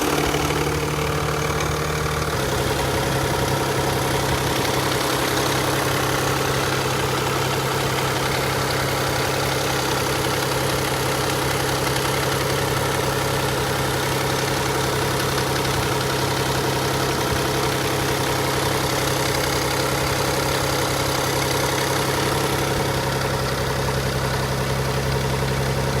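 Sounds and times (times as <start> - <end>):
car engine idling: 0.0 - 26.0.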